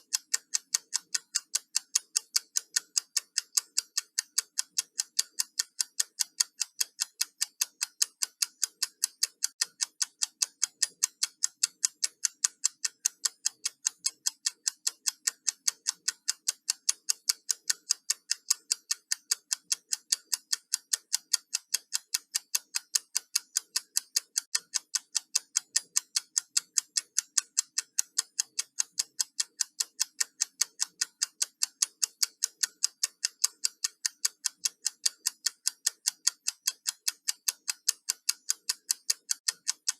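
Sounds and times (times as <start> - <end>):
timer ticking: 0.0 - 39.9.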